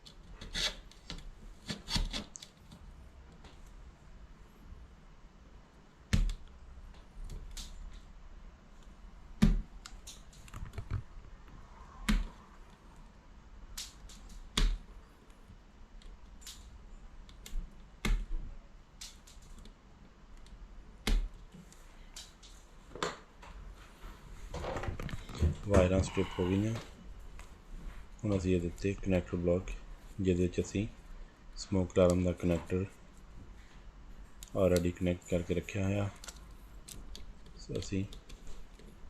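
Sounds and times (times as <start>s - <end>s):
wire stripper clicking and snapping: 6.1s - 8.0s, 9.4s - 11.1s, 13.7s - 14.9s, 16.0s - 18.4s, 19.0s - 22.6s.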